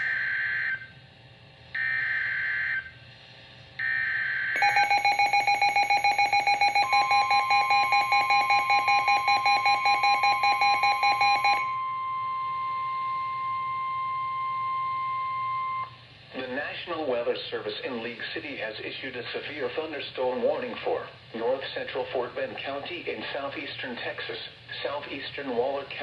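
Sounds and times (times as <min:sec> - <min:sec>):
steady beep: 0:04.6 - 0:16.0.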